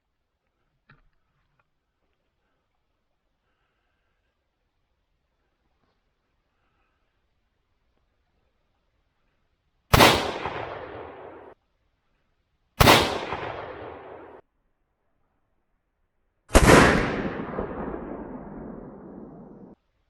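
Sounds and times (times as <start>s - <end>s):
rifle shots with rolling echo: 9.9s - 11.6s, 12.8s - 14.4s, 16.5s - 19.8s.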